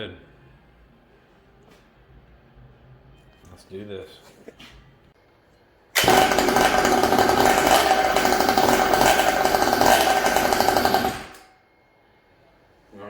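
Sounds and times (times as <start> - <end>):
power tool running with rattle: 6.0 - 11.6.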